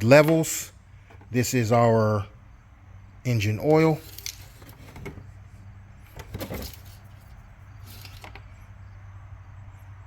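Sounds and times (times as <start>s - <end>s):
oil dipstick handling noises: 0.0s - 1.8s, 3.4s - 8.8s.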